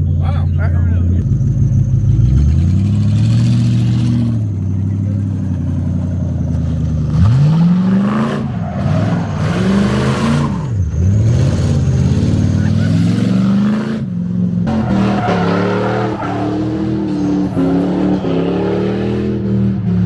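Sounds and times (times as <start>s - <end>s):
car engine revving hard: 6.6s - 20.0s.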